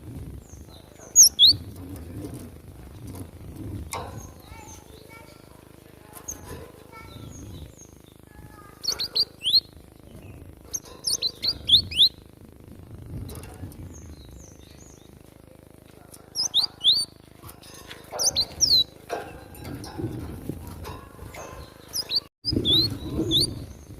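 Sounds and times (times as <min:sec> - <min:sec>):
bird calling sharp high notes: 0:08.6 - 0:09.8, 0:21.8 - 0:23.6.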